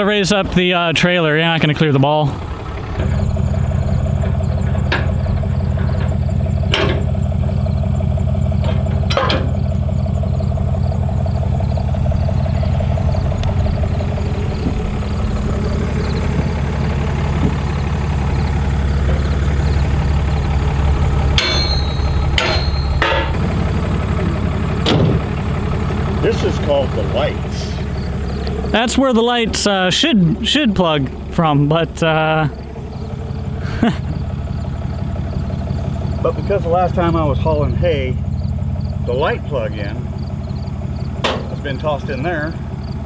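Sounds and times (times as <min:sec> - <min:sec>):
truck engine idling: 0:00.0 - 0:43.0
sharp knocks: 0:21.3 - 0:25.4, 0:41.2 - 0:41.7.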